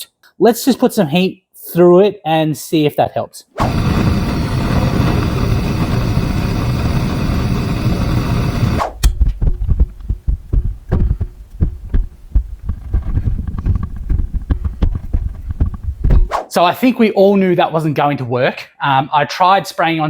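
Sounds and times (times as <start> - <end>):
gas torch flame: 3.6 - 9.4
low thumps: 3.6 - 16.6.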